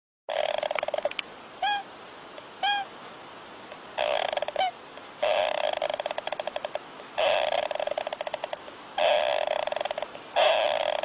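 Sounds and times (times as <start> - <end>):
small animal snoring: 0.3 - 1.1, 4.0 - 11.0
short high calls: 1.6 - 1.9, 2.6 - 2.9, 10.4 - 11.0.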